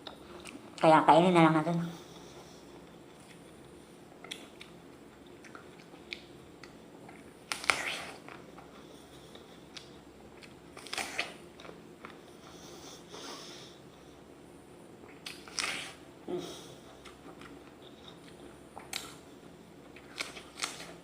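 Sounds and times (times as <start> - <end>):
crisp chewing crunches: 3.1 - 12.2, 19.9 - 21.0
apple crunching bites: 20.0 - 21.0.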